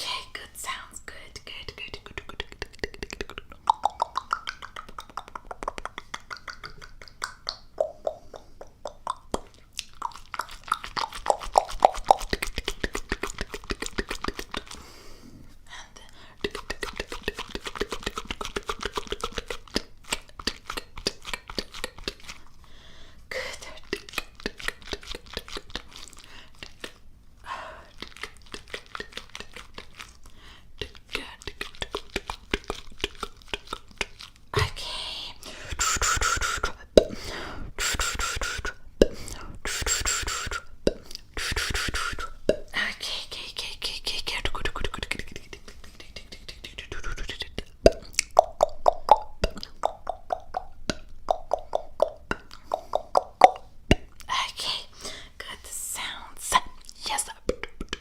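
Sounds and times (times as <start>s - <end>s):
wet mouth clicks and pops: 1.7s - 14.8s, 16.4s - 22.5s, 23.6s - 27.0s, 27.9s - 30.2s, 30.8s - 35.0s, 35.7s - 42.8s, 44.4s - 54.4s, 56.8s - 58.0s
soft breathing: 14.7s - 16.5s, 22.6s - 23.8s, 36.5s - 39.7s, 54.8s - 56.4s.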